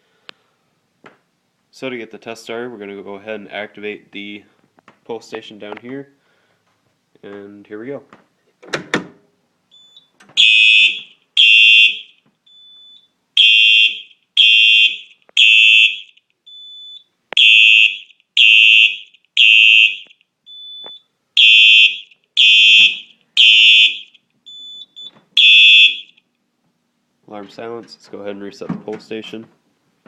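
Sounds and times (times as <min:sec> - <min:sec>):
fire alarm horn blasts: 0:10.4 - 0:12.2, 0:13.4 - 0:16.2, 0:17.4 - 0:20.1, 0:21.4 - 0:24.2, 0:25.4 - 0:26.2.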